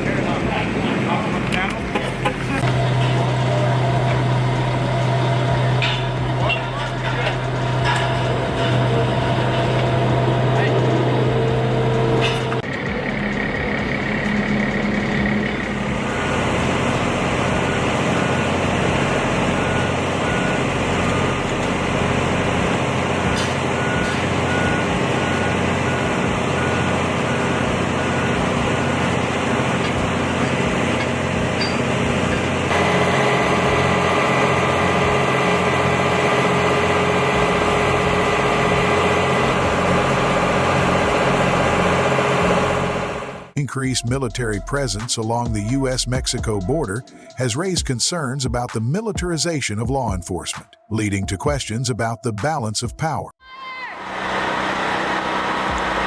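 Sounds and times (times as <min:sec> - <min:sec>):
heavy vehicle engine running: 0:00.0 - 0:47.8, 0:54.0 - 0:56.0
backup alarm beeping: 0:15.9 - 0:21.9, 0:23.0 - 0:30.3.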